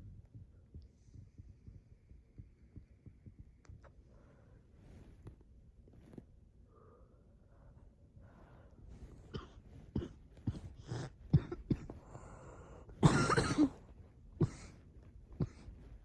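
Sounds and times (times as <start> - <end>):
person coughing: 9.2 - 14.8, 15.4 - 15.8.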